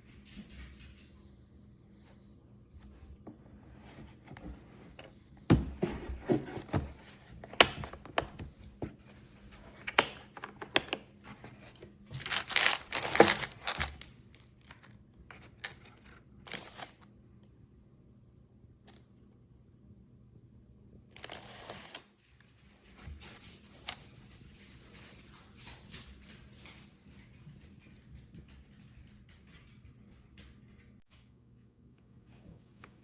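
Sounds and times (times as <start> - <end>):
crinkling rustle: 6.1 - 17.0.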